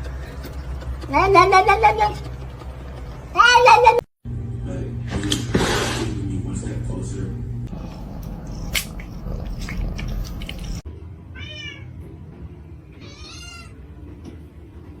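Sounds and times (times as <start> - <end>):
low hum: 7.4 - 10.8
cat meowing: 11.4 - 11.9, 13.0 - 13.8.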